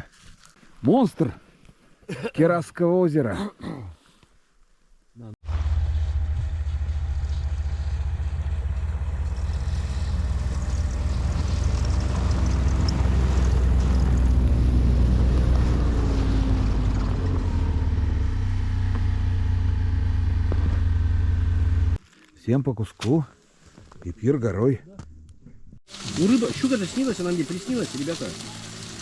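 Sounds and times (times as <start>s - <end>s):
motor engine droning: 5.5s - 22.0s.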